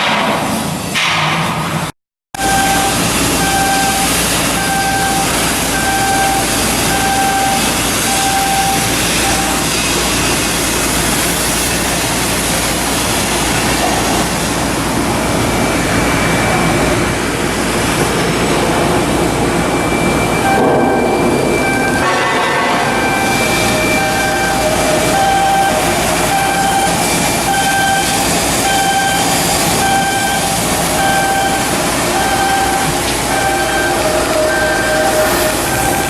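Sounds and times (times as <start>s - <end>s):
heavy machinery noise: 0.0s - 36.0s
electronic warning beeps: 2.4s - 10.0s, 19.3s - 36.0s
steady high whine: 2.4s - 36.0s.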